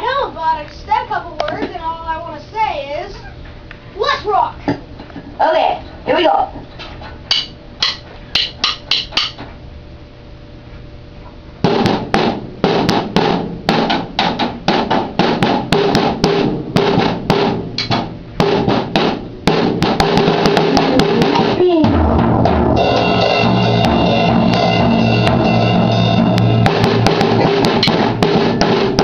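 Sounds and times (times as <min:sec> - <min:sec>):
drum kit solo: 0:11.6 - 0:29.0.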